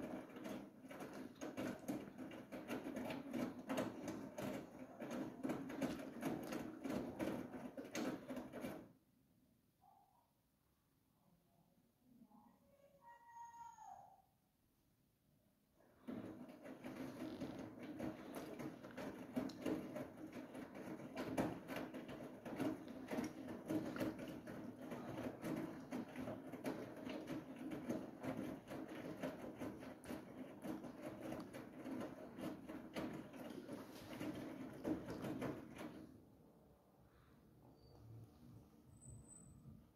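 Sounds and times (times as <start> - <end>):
rattling and clicking: 0.0 - 8.9, 16.0 - 36.2
washing machine drum humming: 0.0 - 9.0, 15.9 - 36.6.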